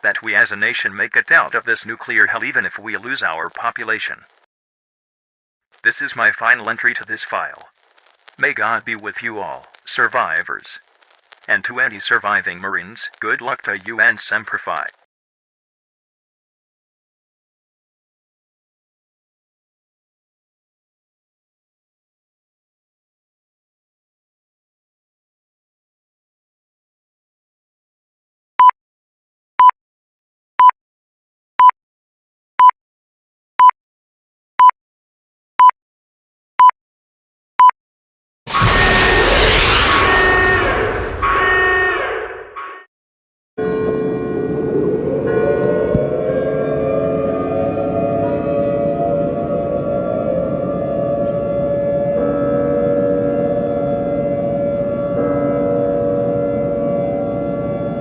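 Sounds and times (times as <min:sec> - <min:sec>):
dense rumbling noise: 0:38.5 - 0:41.8
siren-like wailing tones: 0:38.5 - 0:42.8.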